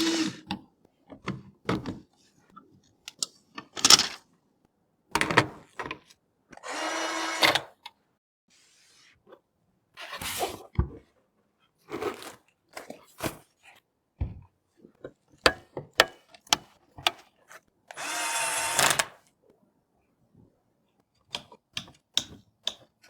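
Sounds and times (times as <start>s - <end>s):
electric screwdriver whirring: 6.6s - 7.7s, 17.9s - 19.2s.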